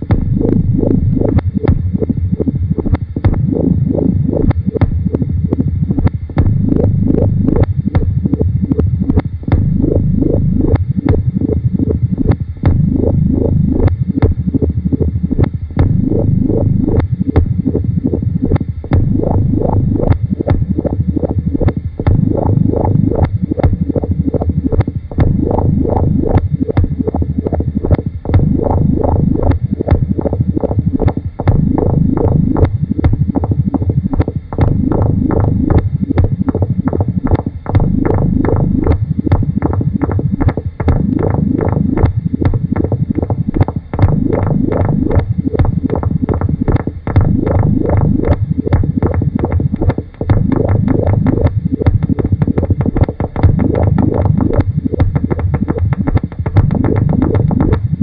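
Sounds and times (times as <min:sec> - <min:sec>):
throbbing electronic pulses: 0:00.0 - 0:58.0.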